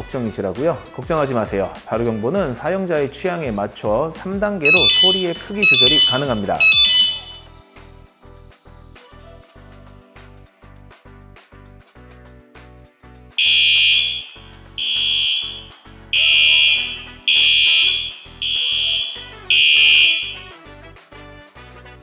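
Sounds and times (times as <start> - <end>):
background music: 0.0 - 22.0
high-pitched electronic alarm beeps: 4.7 - 7.5, 13.4 - 20.5.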